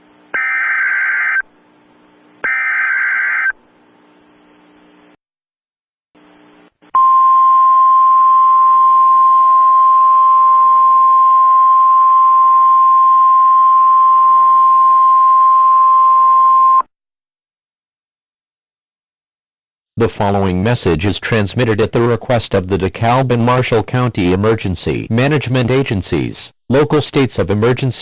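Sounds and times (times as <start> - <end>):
faint radio hiss: 1.4 - 5.2.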